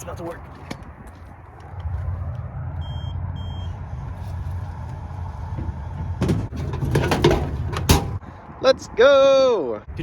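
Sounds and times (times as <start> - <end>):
short high beeps: 2.8 - 3.8.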